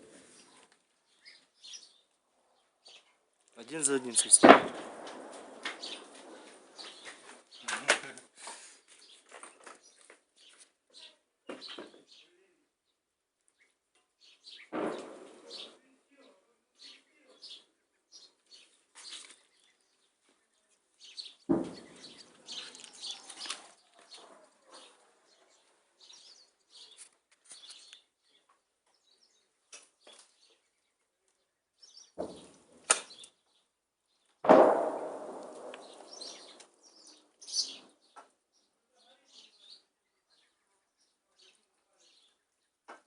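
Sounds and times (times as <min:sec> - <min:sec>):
birds chirping faintly: 0:00.0 - 0:04.4, 0:05.6 - 0:14.8, 0:15.4 - 0:34.4, 0:35.6 - 0:42.9
sharp bangs: 0:03.7 - 0:07.3, 0:14.7 - 0:15.8, 0:21.5 - 0:22.6, 0:34.4 - 0:36.8
artillery explosions booming: 0:04.3 - 0:07.0, 0:14.7 - 0:15.7, 0:34.4 - 0:36.6.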